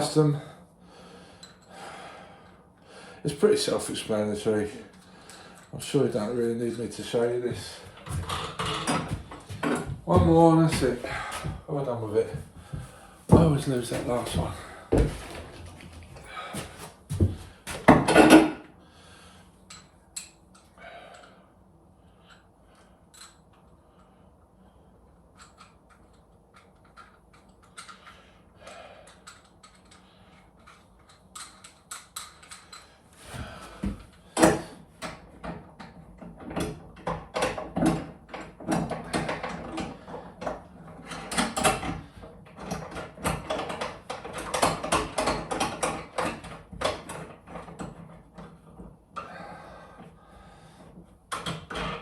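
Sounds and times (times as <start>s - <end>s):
tools knocking and clattering: 7.9s - 11.6s, 12.3s - 18.6s, 29.1s - 49.0s.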